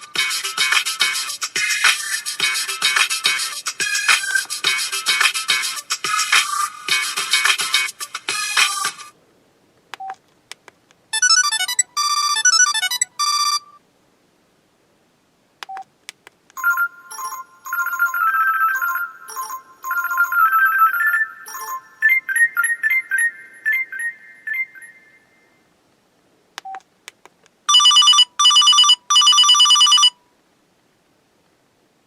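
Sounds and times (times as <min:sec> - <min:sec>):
phone ringtone melody: 0:11.2 - 0:13.8, 0:16.6 - 0:25.6, 0:27.7 - 0:30.2.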